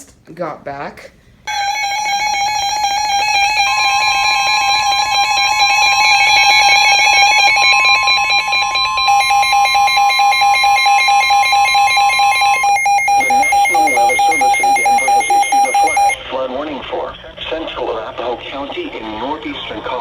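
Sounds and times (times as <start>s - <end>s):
harsh multi-tone alarm: 1.5s - 16.2s.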